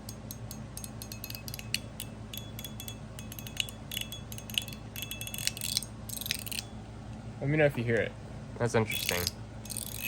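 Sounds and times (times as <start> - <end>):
metal fidget slider clicking: 3.3 - 6.7, 8.9 - 10.0.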